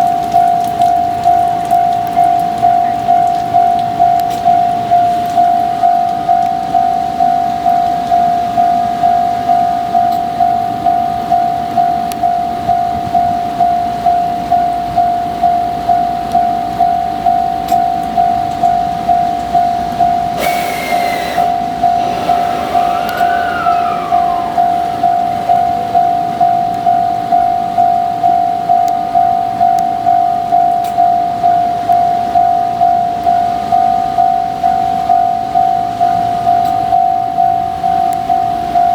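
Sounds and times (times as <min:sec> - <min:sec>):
level crossing warning bell clanging: 0:00.0 - 0:38.9.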